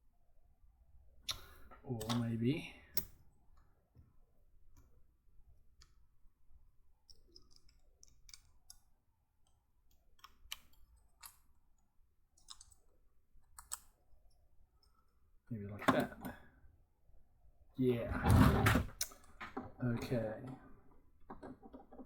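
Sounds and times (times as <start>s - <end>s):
plastic bricks clicking together: 13.5s - 14.0s.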